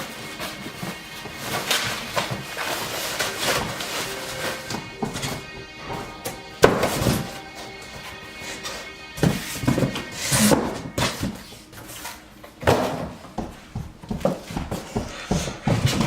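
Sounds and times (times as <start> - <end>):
cardboard packaging rustling: 0.0 - 12.7.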